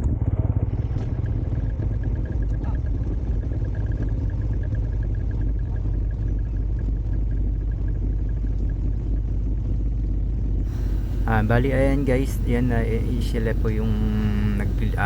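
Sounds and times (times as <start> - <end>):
atv engine rumble: 10.7 - 15.0.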